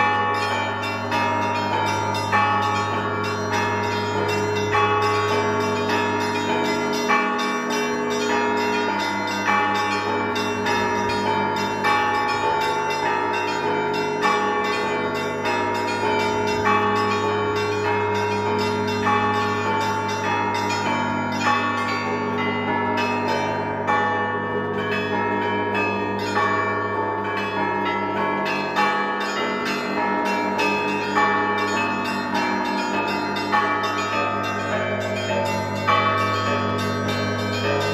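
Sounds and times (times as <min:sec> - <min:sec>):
small bells chiming rapidly: 0:00.0 - 0:24.2, 0:24.8 - 0:37.9
low bell hum: 0:00.0 - 0:37.9.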